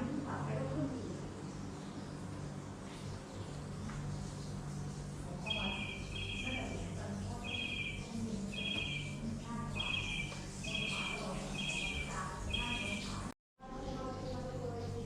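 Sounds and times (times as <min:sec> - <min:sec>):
steady low hum: 0:00.0 - 0:15.0
bird trilling call: 0:05.4 - 0:13.3.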